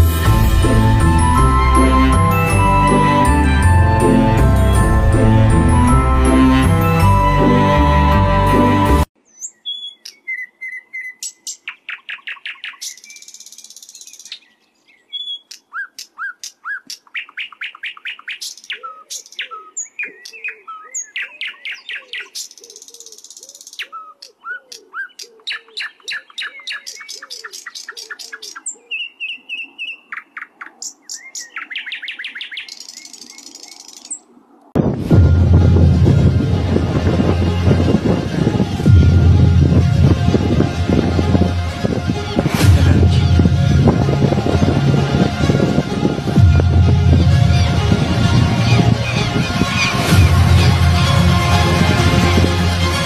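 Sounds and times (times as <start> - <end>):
birds chirping and trilling: 9.2 - 34.6, 43.4 - 51.1.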